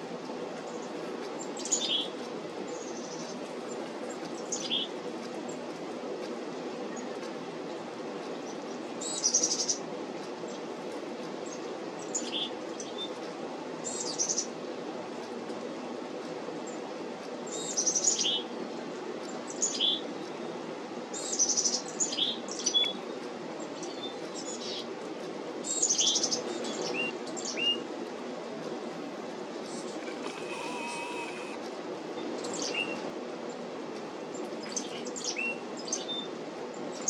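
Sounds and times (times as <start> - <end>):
chickadees calling: 29.7 - 31.6.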